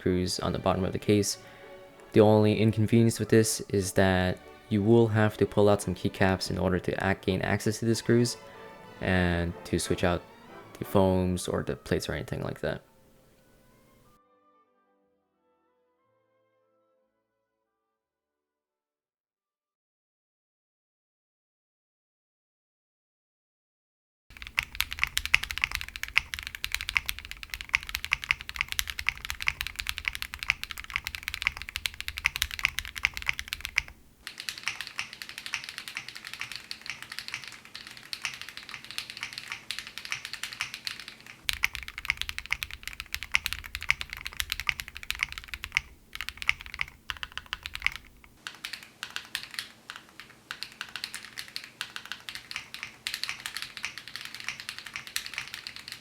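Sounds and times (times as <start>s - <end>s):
fast typing on mechanical keyboard: 24.3s - 56.0s.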